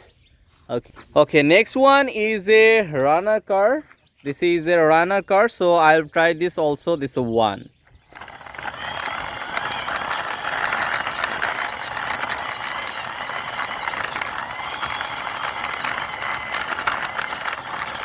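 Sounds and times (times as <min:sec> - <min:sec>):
toy car wheels rolling: 0:08.0 - 0:18.0.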